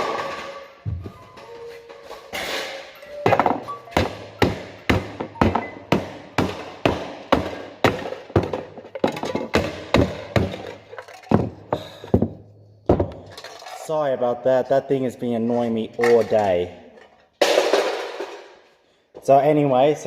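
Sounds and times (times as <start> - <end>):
hard knocks: 3.3 - 13.2.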